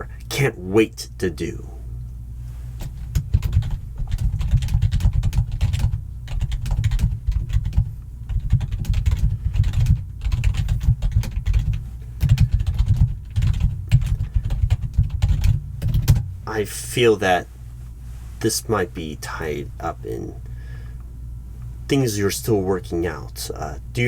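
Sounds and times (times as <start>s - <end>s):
fast typing on keyboard: 3.2s - 16.2s.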